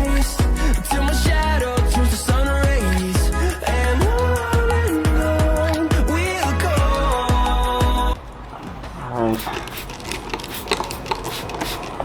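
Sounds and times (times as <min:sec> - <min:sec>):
song with kick drum and vocals: 0:00.0 - 0:08.2.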